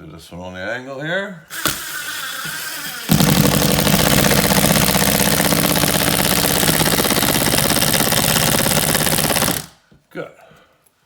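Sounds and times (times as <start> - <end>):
power drill driving screw: 1.5 - 9.8.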